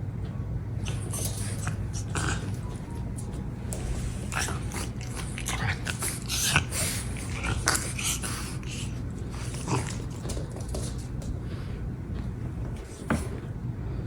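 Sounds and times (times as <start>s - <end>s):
puppy snorting and snuffling: 0.8s - 11.1s.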